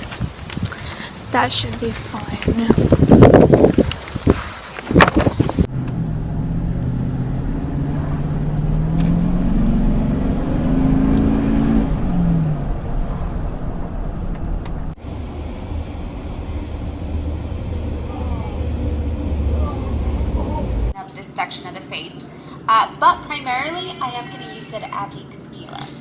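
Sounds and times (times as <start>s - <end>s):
road noise: 0.0s - 25.6s
car engine accelerating: 5.2s - 21.0s.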